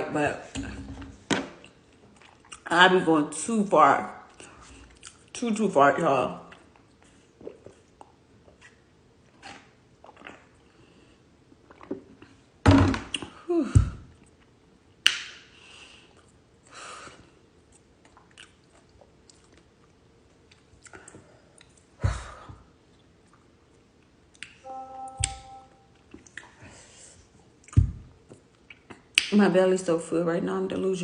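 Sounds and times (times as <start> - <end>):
person chewing wetly: 1.6 - 2.7, 4.3 - 5.3, 6.5 - 12.5, 17.4 - 22.0.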